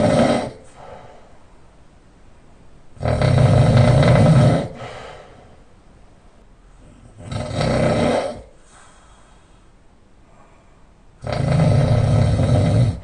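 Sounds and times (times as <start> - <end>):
man snoring loudly: 0.0 - 0.6, 3.0 - 4.8, 7.1 - 8.5, 11.2 - 13.0
soft breath: 0.6 - 1.6, 4.7 - 5.8, 8.5 - 11.1.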